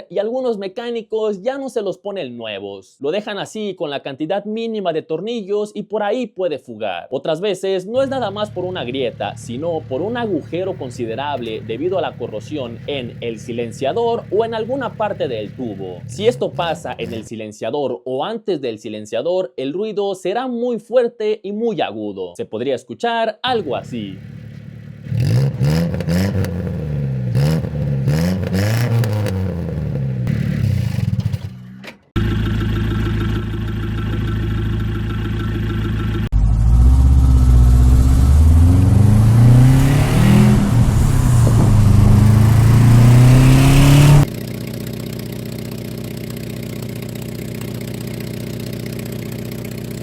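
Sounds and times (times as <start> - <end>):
loud car exhaust revving: 8.0 - 17.3, 23.6 - 31.2, 32.2 - 44.6.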